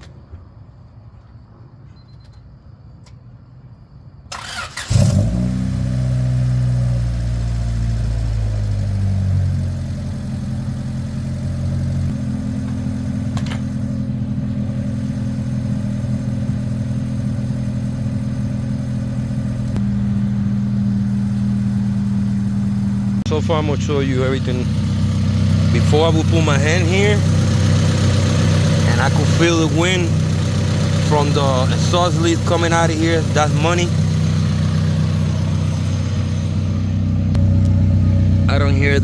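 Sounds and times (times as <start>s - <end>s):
car engine starting and idling: 4.3s - 39.0s.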